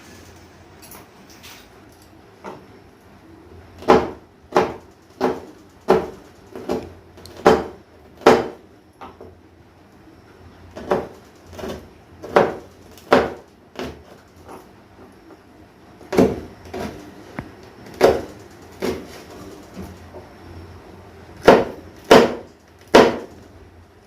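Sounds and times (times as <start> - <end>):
knife chopping on a board: 3.8 - 8.6, 10.8 - 14.0, 16.1 - 17.0, 18.0 - 19.2, 21.4 - 23.3.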